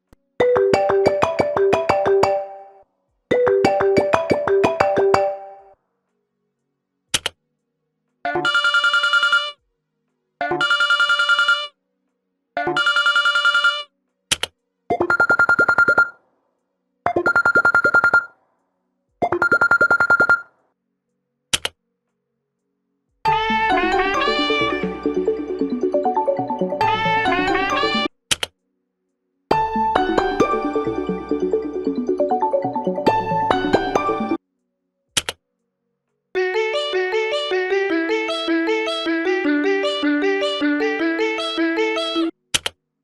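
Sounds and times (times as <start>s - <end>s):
phone ringtone melody: 0.4s - 5.8s, 8.3s - 9.6s, 10.4s - 11.8s, 12.6s - 13.9s, 14.9s - 16.2s, 17.1s - 18.3s, 19.2s - 20.4s, 23.3s - 28.1s, 29.8s - 34.4s, 36.4s - 42.3s
phone ringtone trilling: 8.3s - 9.6s, 10.4s - 11.8s, 12.6s - 13.9s, 14.9s - 16.2s, 17.1s - 18.3s, 19.3s - 20.5s, 23.4s - 25.2s.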